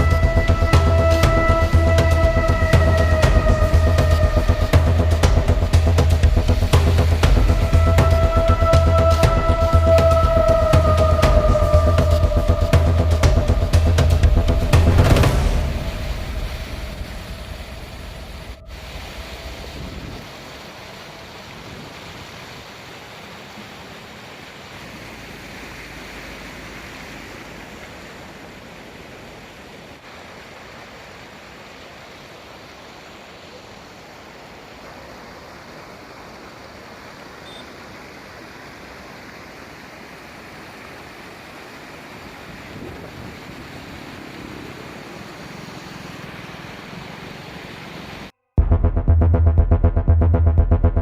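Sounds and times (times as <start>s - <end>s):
steady rushing noise: 0.0s - 22.2s.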